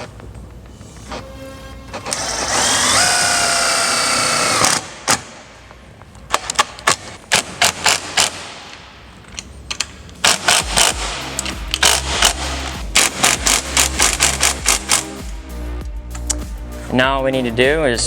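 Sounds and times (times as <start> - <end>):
irregular sharp clicks: 16.1 - 16.5.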